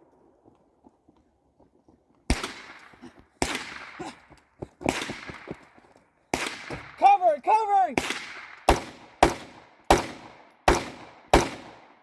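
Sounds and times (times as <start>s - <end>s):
gunshots with echo: 8.0s - 12.0s.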